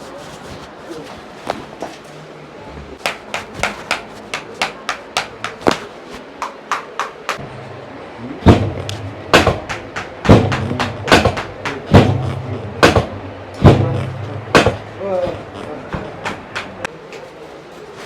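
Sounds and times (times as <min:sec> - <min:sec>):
low steady hum: 0:00.0 - 0:17.1
heavy thumps: 0:03.0 - 0:07.4, 0:08.4 - 0:16.9.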